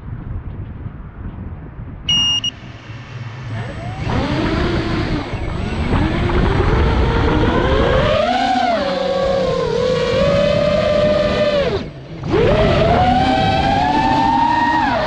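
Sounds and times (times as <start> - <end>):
wind on microphone: 0.0 - 15.0
short electronic beep: 2.1 - 3.2
model plane motor whining: 3.2 - 15.0.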